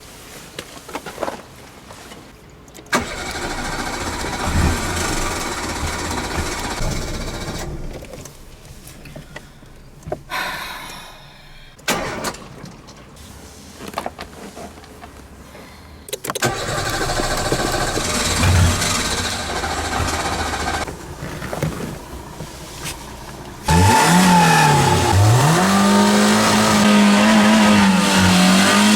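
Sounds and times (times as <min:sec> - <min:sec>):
starter motor cranking engine: 0:02.9 - 0:10.4, 0:16.2 - 0:28.9.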